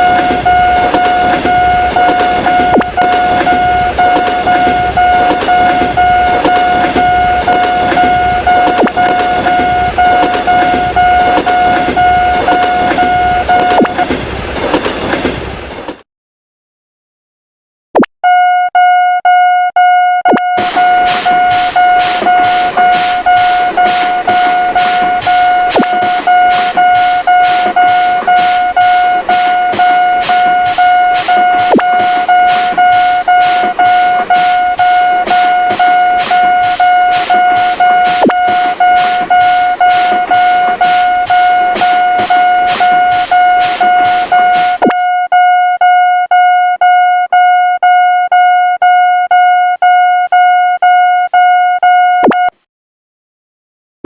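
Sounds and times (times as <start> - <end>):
railroad crossing bell ringing: 0.0 - 13.8, 20.8 - 44.8
passing train rushing: 0.0 - 15.8, 20.6 - 44.8.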